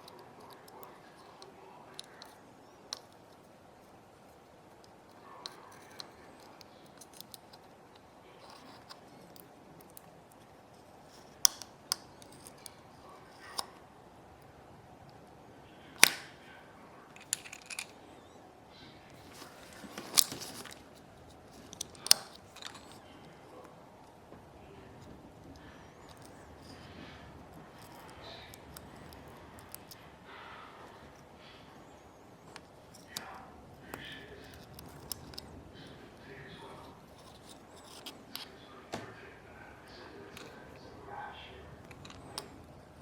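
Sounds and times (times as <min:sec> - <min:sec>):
small tools clicking and tapping: 0:04.7 - 0:13.8, 0:17.1 - 0:18.0, 0:19.3 - 0:23.4, 0:37.1 - 0:39.1.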